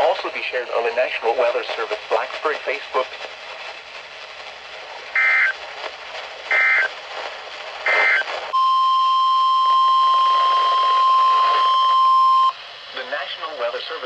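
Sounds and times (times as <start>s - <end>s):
radio hiss: 0.0s - 8.7s, 9.5s - 14.0s
digital data tone bursts: 5.2s - 5.6s, 6.5s - 6.9s, 7.9s - 8.9s
steady warning alarm tone: 5.2s - 5.6s, 6.5s - 6.9s, 7.8s - 12.6s.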